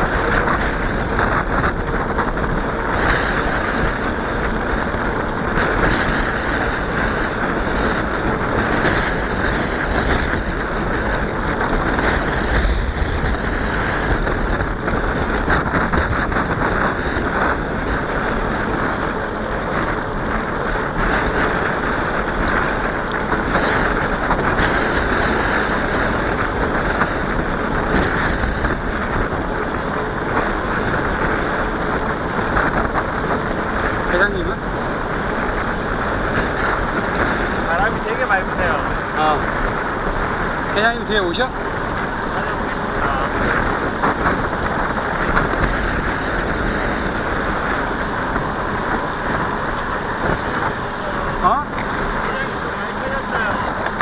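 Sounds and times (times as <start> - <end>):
bicycle tyre noise: 0.0 - 54.0
wind rumbling on microphone: 0.0 - 54.0.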